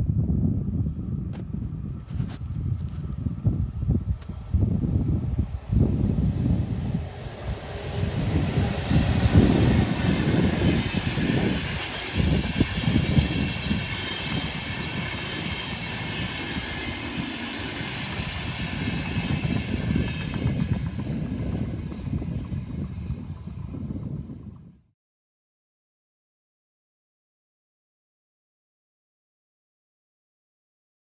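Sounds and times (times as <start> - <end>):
train rail rumble: 0.1 - 24.7.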